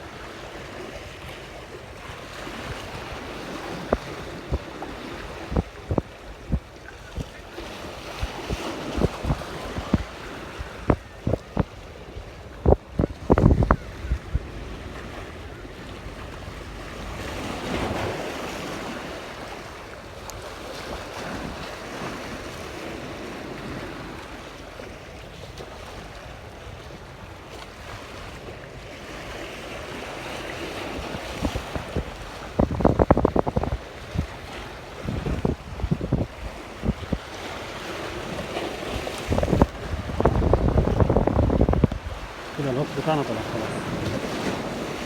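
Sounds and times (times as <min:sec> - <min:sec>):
sea waves washing: 0:00.0 - 0:45.0
wind buffeting microphone: 0:02.0 - 0:19.2, 0:29.8 - 0:45.0.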